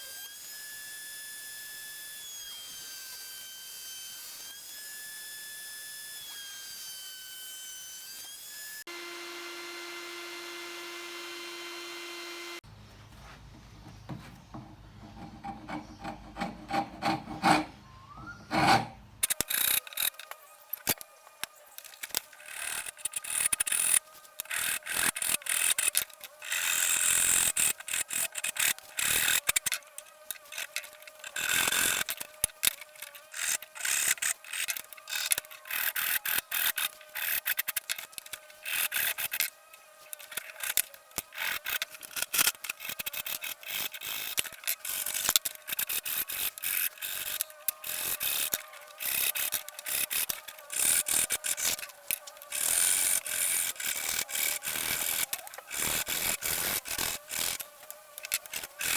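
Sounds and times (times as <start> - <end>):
hand rubbing and scraping metal: 12.9 - 58.9.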